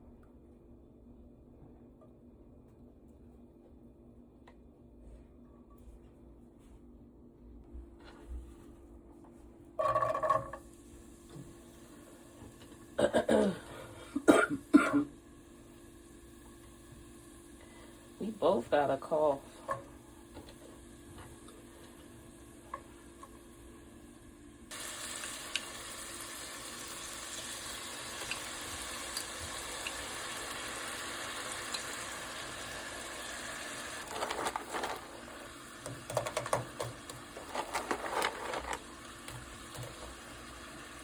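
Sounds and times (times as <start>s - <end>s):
food sizzling in a pan: 19.9s - 34.2s, 34.9s - 41.0s
crackling and clatter: 36.1s - 39.9s.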